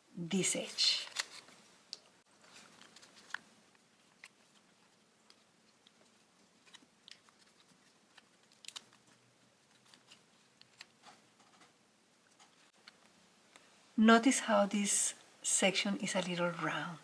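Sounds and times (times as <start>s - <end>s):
paper crackles: 0.9s - 1.6s, 2.4s - 11.2s
paper crinkling and creasing: 1.0s - 1.6s, 2.2s - 11.7s.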